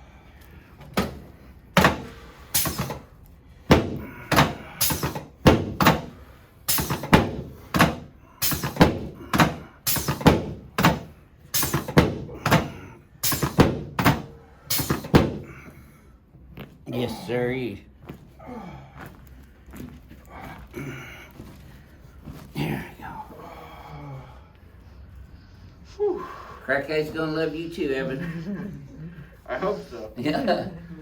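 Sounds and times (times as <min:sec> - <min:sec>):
sharp thuds of chiropractic adjustment: 0:00.9 - 0:15.6.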